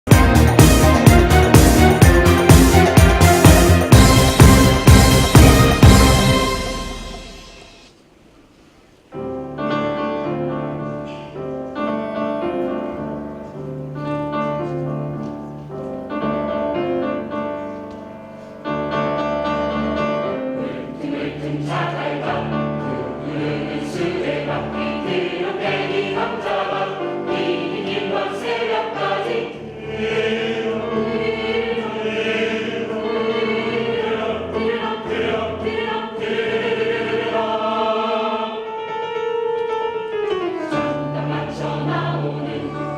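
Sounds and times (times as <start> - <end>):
choir singing in harmony: 0.1 - 8.0, 19.3 - 42.9.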